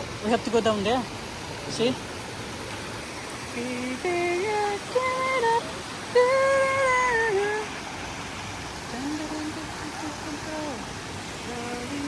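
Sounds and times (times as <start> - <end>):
brook water running: 0.0 - 12.0
person humming: 8.9 - 10.8.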